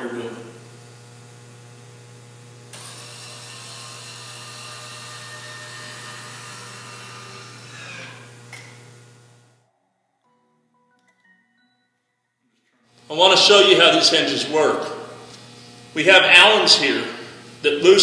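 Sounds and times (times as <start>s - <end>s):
power tool whining: 0.6s - 9.7s.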